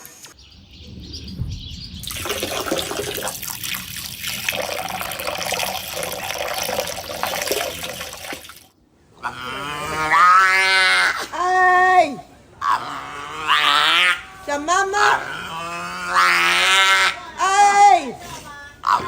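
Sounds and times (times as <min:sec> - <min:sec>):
water running and splashing: 0:02.0 - 0:08.7.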